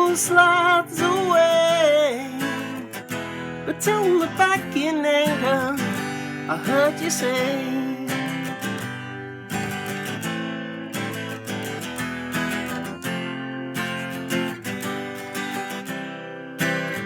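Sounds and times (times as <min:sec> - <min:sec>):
person singing: 0:00.0 - 0:03.0, 0:03.6 - 0:08.5
acoustic guitar strumming chords: 0:00.0 - 0:17.0.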